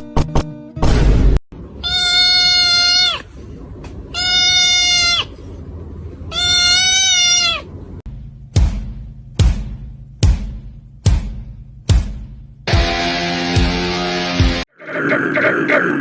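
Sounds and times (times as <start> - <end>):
cat meowing: 1.8 - 3.3, 4.1 - 5.3, 6.3 - 7.7.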